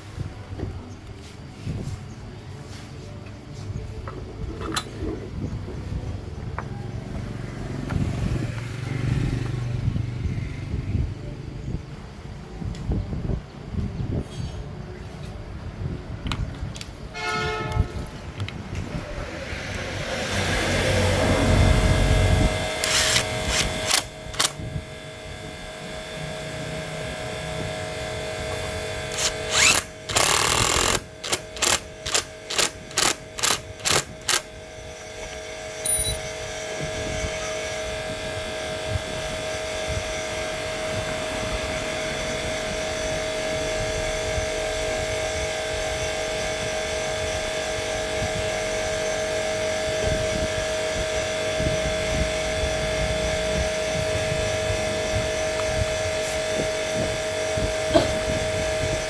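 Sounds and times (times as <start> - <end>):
small engine whining: 18.9 - 59.0
loud burst of noise: 19.3 - 24.9, 29.1 - 34.5.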